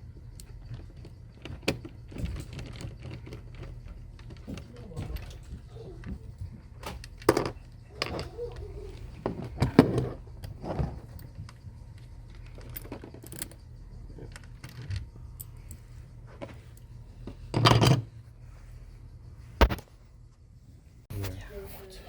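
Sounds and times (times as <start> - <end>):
parts clattering: 0.0 - 18.8
computer parts clicking and clinking: 0.2 - 15.8.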